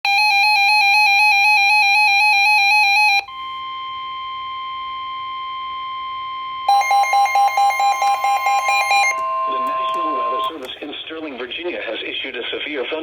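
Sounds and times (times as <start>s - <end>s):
steady alarm tone: 6.4s - 10.6s.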